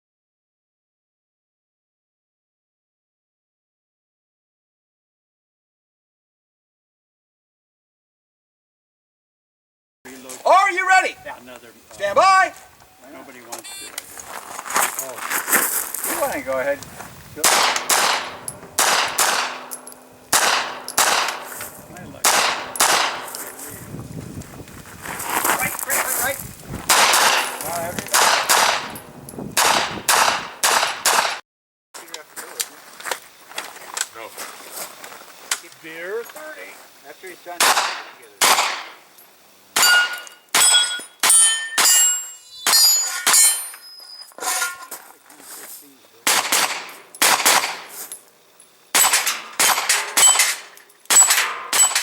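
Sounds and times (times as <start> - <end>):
steel target ringing: 17.4 - 23.7, 26.9 - 29.7, 39.8 - 43.9, 49.0 - 52.0
carbine gunshots: 17.4 - 23.8, 26.9 - 31.4, 37.6 - 39.1, 39.8 - 42.1, 46.2 - 48.0, 48.9 - 52.0.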